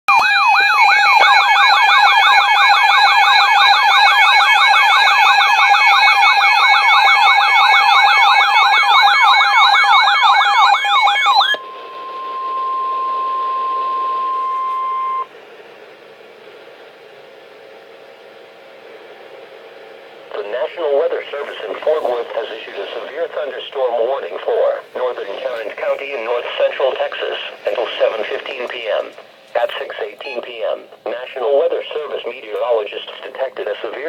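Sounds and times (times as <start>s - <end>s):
warbling electronic siren: 0.1s - 15.3s
steady alert tone: 10.2s - 15.3s.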